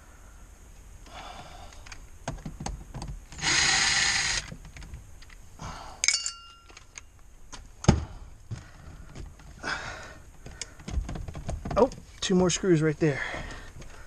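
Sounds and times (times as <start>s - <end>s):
power drill running: 3.4s - 4.5s
sharp metallic clink ringing: 6.0s - 6.8s.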